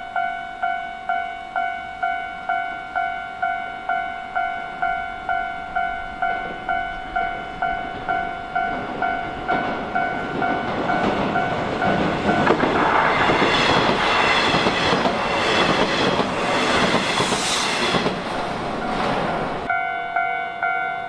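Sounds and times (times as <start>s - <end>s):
level crossing warning bell: 0.0s - 12.6s, 18.0s - 21.0s
train wheels clattering: 5.7s - 19.7s.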